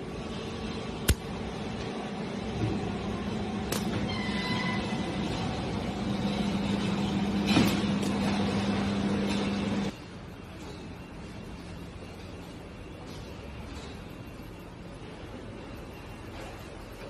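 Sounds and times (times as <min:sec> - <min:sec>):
machinery humming: 0:00.0 - 0:17.0
sharp click: 0:01.0 - 0:01.2.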